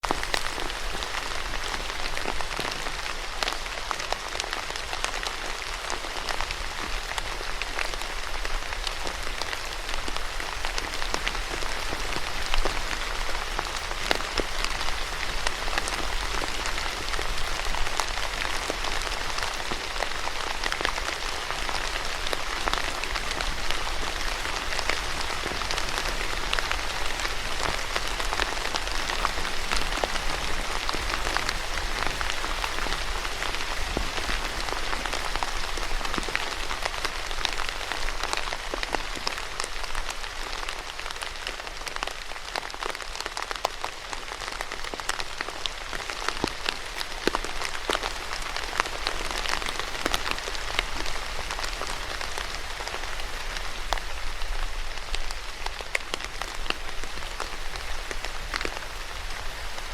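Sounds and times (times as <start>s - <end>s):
raindrops ticking on a surface: 0.0s - 59.9s
steady rain falling: 0.0s - 59.9s.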